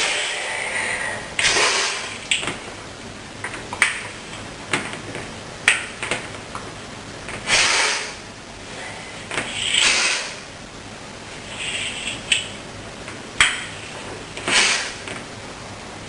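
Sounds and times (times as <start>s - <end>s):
person sniffing: 0.0s - 2.2s, 7.5s - 10.5s, 11.5s - 12.2s, 14.5s - 15.0s.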